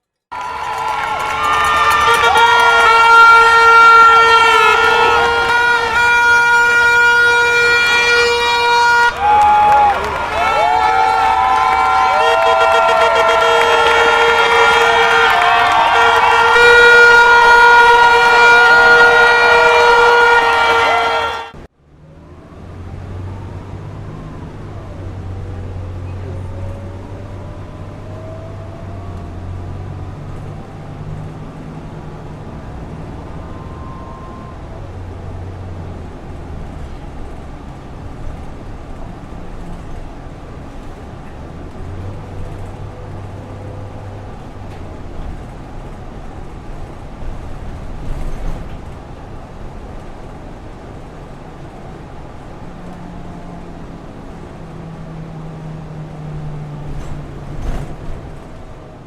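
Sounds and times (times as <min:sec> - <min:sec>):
car and bus engines passing: 0:00.1 - 0:59.0.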